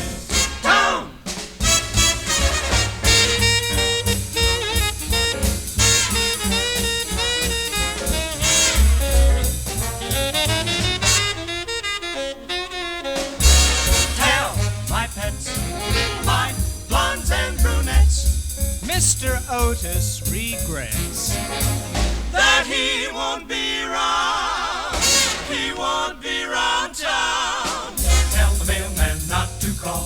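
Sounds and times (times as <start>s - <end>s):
saxophones and brass: 0.0s - 18.2s, 20.7s - 23.0s, 24.9s - 26.2s, 27.6s - 30.0s
swing big band playing: 0.0s - 23.4s, 24.8s - 30.0s.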